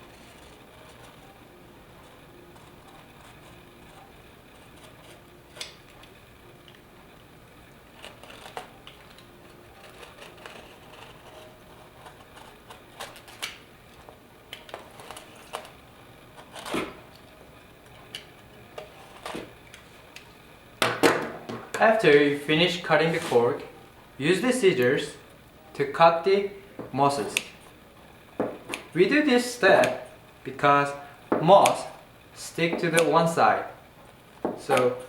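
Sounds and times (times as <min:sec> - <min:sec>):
knife scraping cork board: 0:09.8 - 0:13.4.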